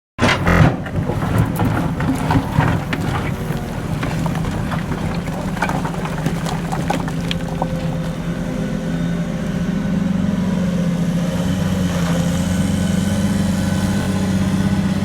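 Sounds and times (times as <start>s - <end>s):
excavator knocks and clanks: 0.2s - 8.7s
excavator diesel engine running: 0.2s - 15.0s.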